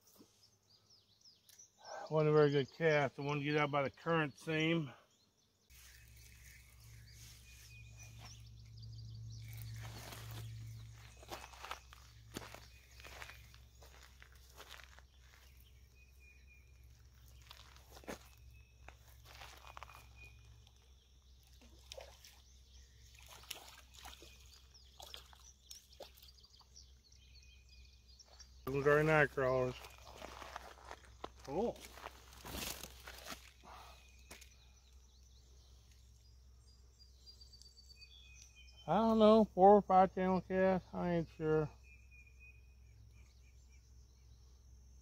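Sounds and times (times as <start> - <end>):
small bird chirps: 5.2 - 39.1.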